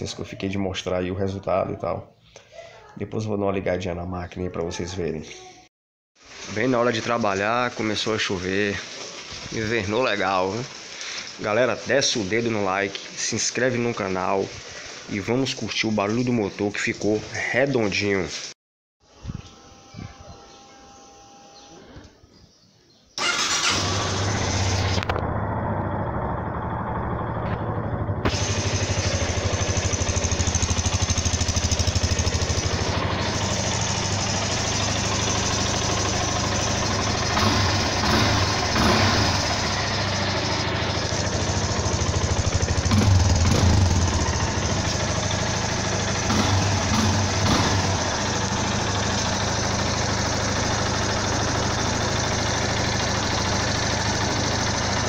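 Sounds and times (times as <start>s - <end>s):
motorcycle engine idling: 23.2s - 55.0s.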